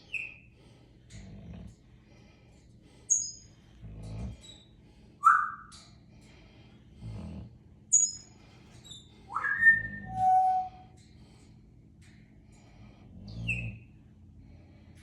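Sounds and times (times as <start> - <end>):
dog snoring with nasal whistles: 9.4 - 10.8, 13.1 - 13.9.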